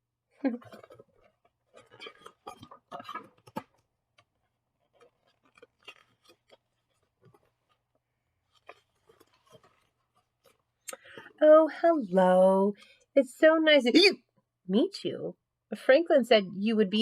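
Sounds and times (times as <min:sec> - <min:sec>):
book pages rustling: 0:00.7 - 0:11.4.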